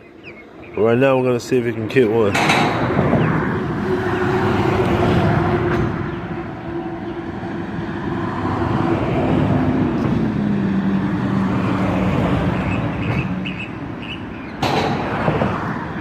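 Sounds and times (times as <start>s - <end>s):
engine humming: 0.0s - 16.0s.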